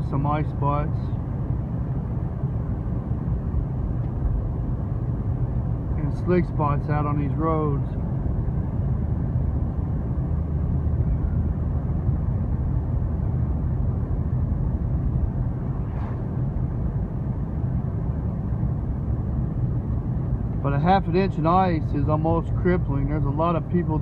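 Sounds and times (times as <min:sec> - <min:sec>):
faint engine hum: 0:00.0 - 0:24.0
tyres rumbling on road: 0:00.0 - 0:24.0
faint swish: 0:15.5 - 0:16.6.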